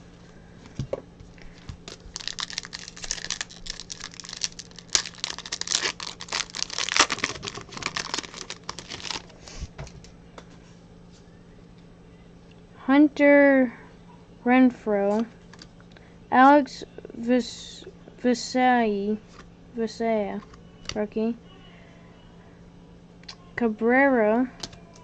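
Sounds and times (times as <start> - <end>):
foil wrapper crinkling and tearing: 1.4 - 9.4.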